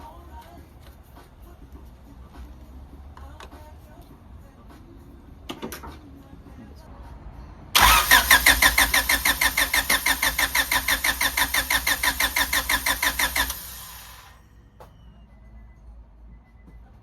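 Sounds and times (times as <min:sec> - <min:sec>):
starter motor cranking engine: 0:07.8 - 0:14.4.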